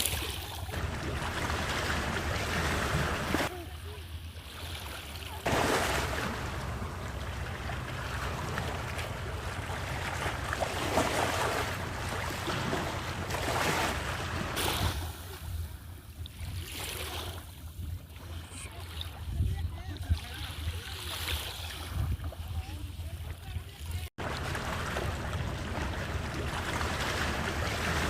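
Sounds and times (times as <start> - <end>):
surf washing on shore: 0.0 - 4.0, 5.4 - 15.6, 23.9 - 28.0
wind on microphone: 21.7 - 22.7.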